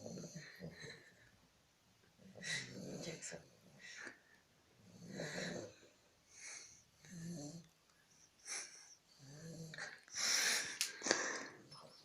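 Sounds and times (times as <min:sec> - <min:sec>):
dog snoring: 0:00.0 - 0:01.0, 0:02.4 - 0:03.5, 0:04.8 - 0:05.8, 0:07.0 - 0:07.7, 0:09.1 - 0:09.9.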